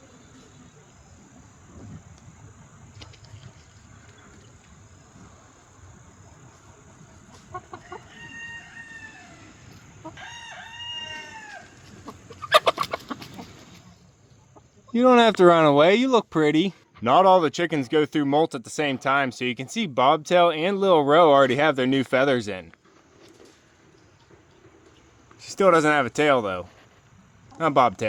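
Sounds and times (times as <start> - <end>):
chickens clucking: 0.0 - 15.9, 16.6 - 20.8
crickets trilling: 0.0 - 16.7
rooster crowing: 7.7 - 11.8.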